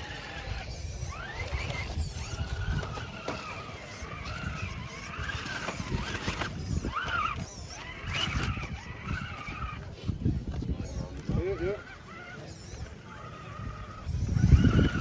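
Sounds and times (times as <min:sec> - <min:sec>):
electric motor and gearbox whining: 0:00.0 - 0:15.0.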